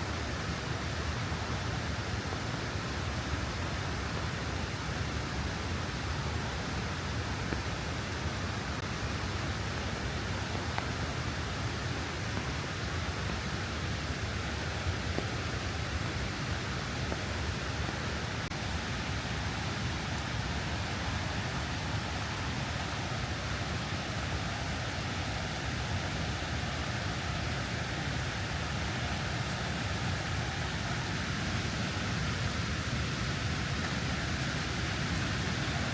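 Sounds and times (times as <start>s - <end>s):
steady rain falling: 0.0s - 35.9s.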